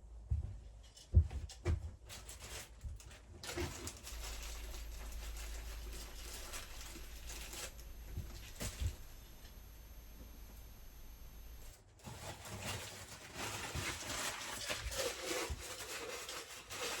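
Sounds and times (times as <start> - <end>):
scraping and rubbing: 3.6 - 17.0.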